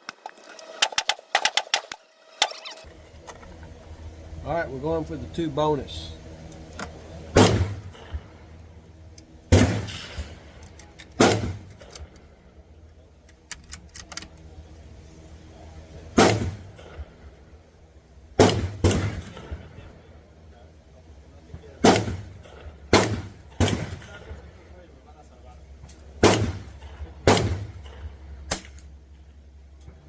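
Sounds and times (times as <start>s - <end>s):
rifle gunshots: 7.3s - 8.2s, 9.5s - 10.4s, 11.2s - 11.9s, 16.2s - 16.9s, 18.4s - 19.7s, 21.8s - 24.3s, 26.2s - 28.8s.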